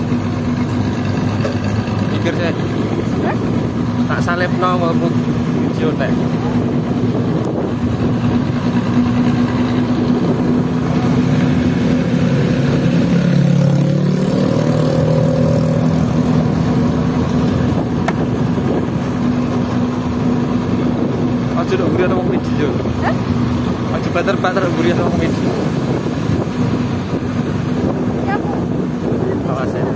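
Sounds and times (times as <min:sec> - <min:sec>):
bus engine running: 0:00.0 - 0:29.9.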